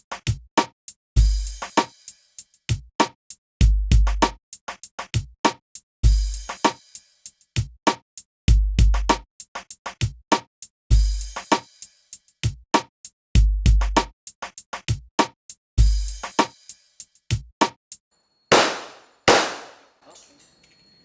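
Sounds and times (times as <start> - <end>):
electronic music with drum beat: 6.0 - 6.8, 8.5 - 9.3, 10.0 - 11.7, 12.4 - 16.7.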